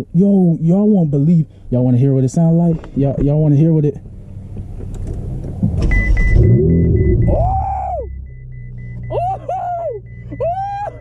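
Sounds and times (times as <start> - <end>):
car engine starting and idling: 0.0 - 11.0
high electronic beeps: 5.9 - 11.0.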